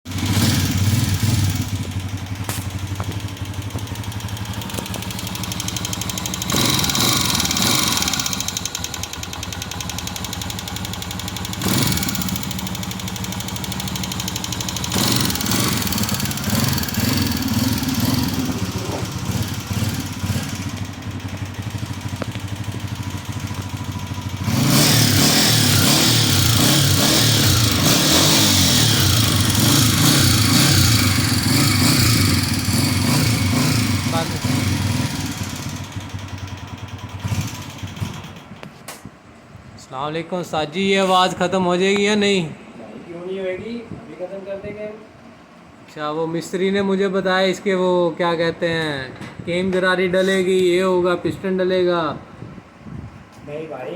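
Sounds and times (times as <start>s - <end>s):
motorcycle engine ticking: 0.1s - 38.8s.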